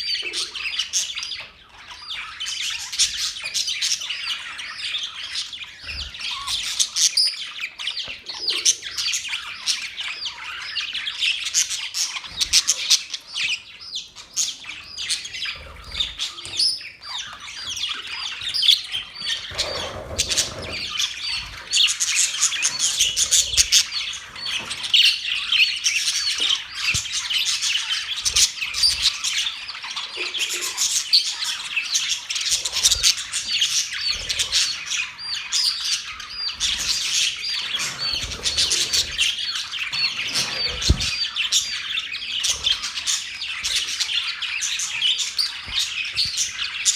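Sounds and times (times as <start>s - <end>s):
budgerigars chattering: 0.0s - 46.9s.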